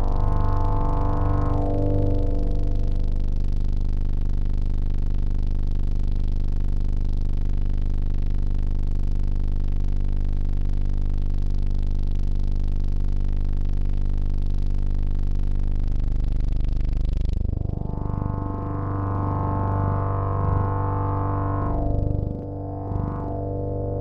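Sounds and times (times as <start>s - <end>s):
synthesizer drone of low tones: 0.0s - 6.1s, 15.4s - 24.0s.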